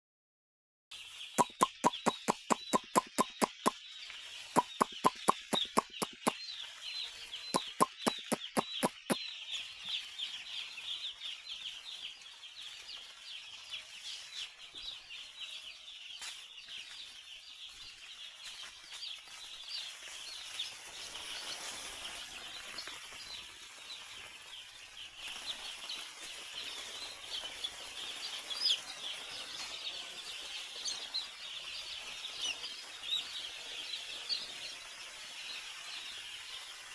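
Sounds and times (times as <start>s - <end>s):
chickens cheeping and clucking: 1.4s - 3.8s, 4.6s - 6.4s, 7.6s - 9.2s
rapid sharp clicks: 1.4s - 3.8s, 4.6s - 6.4s, 7.6s - 9.2s.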